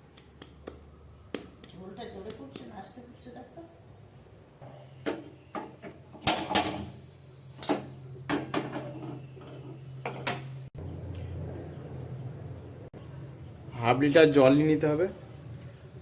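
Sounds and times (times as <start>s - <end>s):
kitchen utensils clattering: 7.6s - 10.6s.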